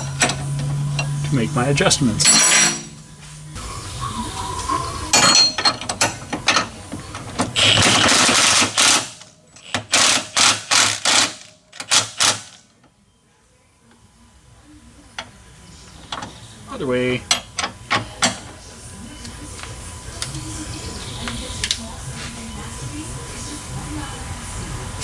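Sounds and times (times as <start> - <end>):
impact wrench bursts: 5.1 - 12.6.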